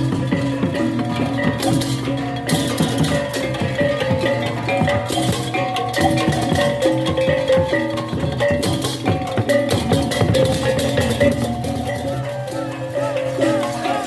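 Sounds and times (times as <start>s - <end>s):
dense drumming: 0.0s - 14.0s.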